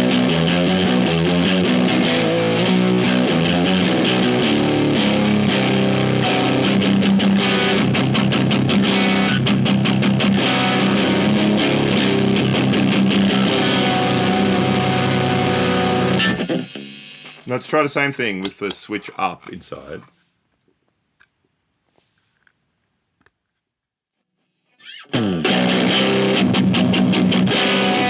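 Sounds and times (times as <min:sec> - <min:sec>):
distorted electric guitar riff: 0:00.0 - 0:17.4, 0:24.8 - 0:28.0.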